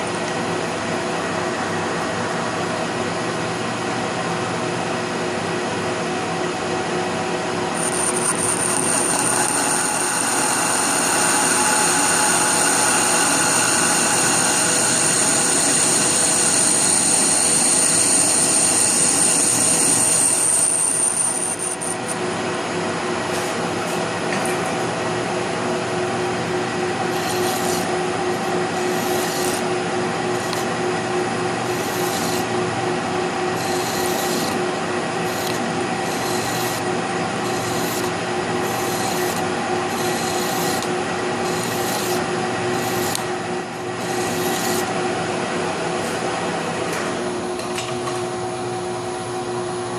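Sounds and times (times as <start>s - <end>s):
metal lathe humming: 7.6s - 22.3s, 25.5s - 45.4s
tool scraping metal: 7.8s - 22.2s, 27.0s - 29.7s, 30.3s - 30.7s, 31.7s - 32.5s, 33.5s - 34.6s, 35.2s - 43.3s, 44.0s - 44.9s.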